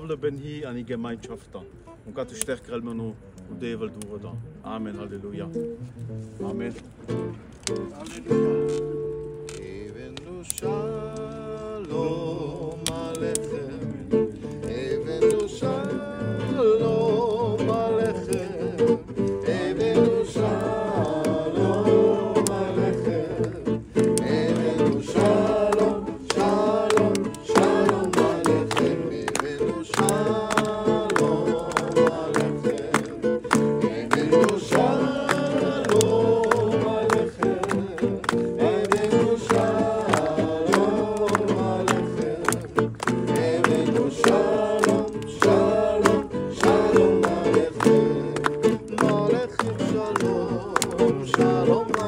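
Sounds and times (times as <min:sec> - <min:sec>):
guitar accompaniment: 0:01.5 - 0:52.0
person singing with vibrato: 0:10.6 - 0:42.5, 0:43.4 - 0:52.0.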